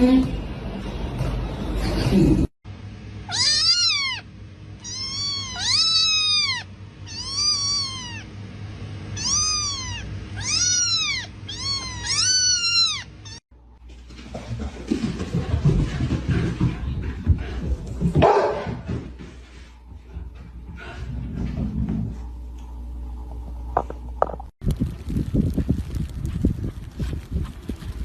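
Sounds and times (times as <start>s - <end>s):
cat meowing: 3.3s - 8.3s, 9.2s - 13.4s.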